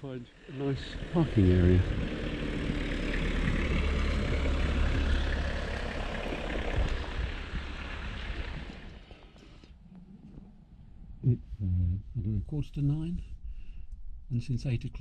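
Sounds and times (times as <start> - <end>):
large vehicle engine rumbling: 0.0 - 9.8.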